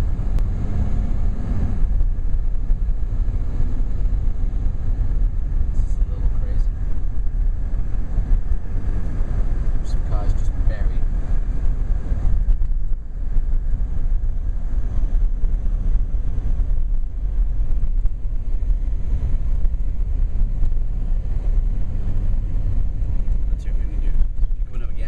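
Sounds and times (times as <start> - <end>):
blizzard wind buffeting microphone: 0.0 - 25.0.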